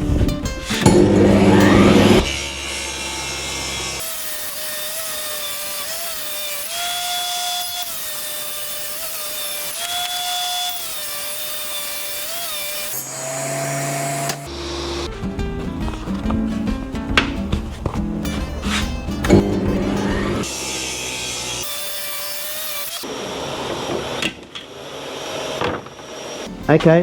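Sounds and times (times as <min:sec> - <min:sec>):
power saw cutting wood: 0:00.2 - 0:16.6, 0:17.2 - 0:27.0
background music: 0:14.5 - 0:20.4, 0:26.5 - 0:27.0.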